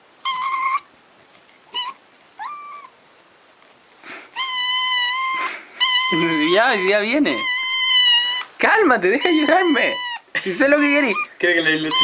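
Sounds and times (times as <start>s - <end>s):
cat meowing: 0.2s - 0.9s, 1.7s - 3.0s, 4.4s - 8.6s, 9.2s - 12.0s.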